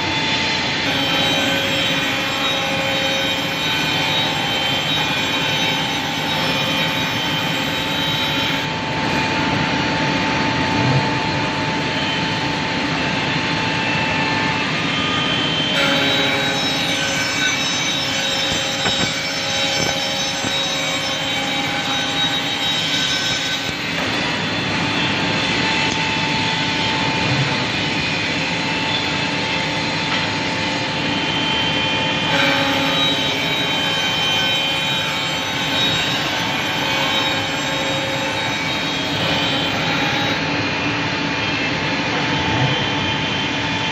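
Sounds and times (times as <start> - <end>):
scroll saw cutting wood: 0.8 - 8.7, 15.8 - 24.3.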